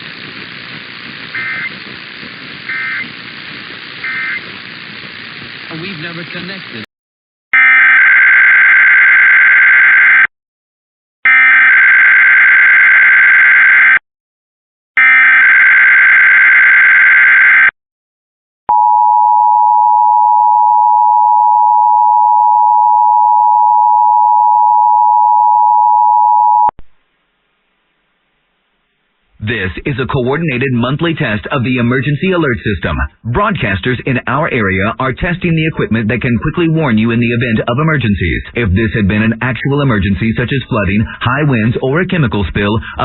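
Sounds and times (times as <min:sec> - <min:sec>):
buzzing data bursts: 0:00.0 - 0:06.6.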